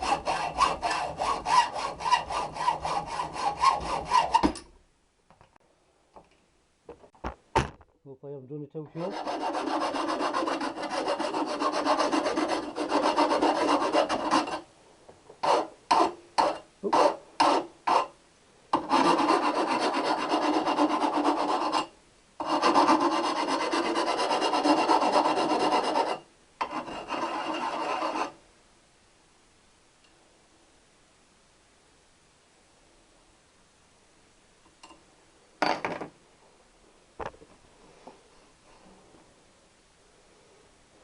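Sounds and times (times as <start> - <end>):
metal tool rasping on steel pipe: 9.0 - 14.7, 15.4 - 18.1, 18.8 - 28.4.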